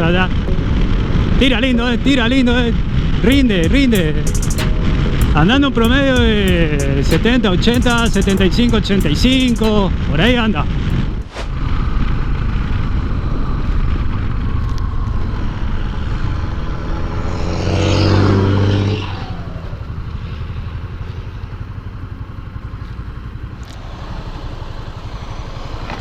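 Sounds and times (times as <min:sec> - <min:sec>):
wind rush: 0:00.3 - 0:19.6
motorcycle engine cruising: 0:08.6 - 0:26.0
passing vehicle engine: 0:09.8 - 0:26.0.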